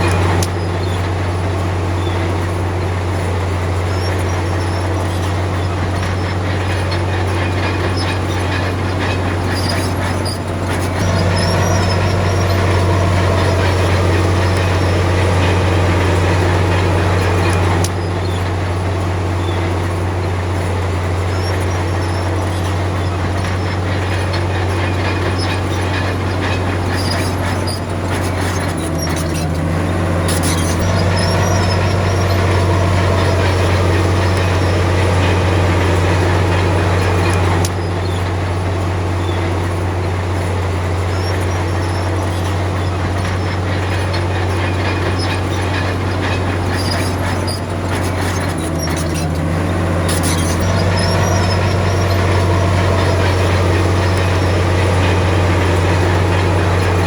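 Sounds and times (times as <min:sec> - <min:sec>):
bulldozer diesel engine droning: 0:00.0 - 0:57.0
clanking rattle: 0:00.0 - 0:57.0.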